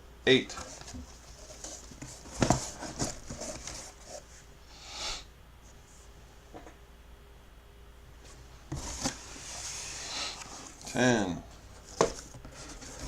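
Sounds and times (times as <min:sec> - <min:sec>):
box rustling slide: 0:00.6 - 0:04.2, 0:08.7 - 0:10.9, 0:11.8 - 0:13.0.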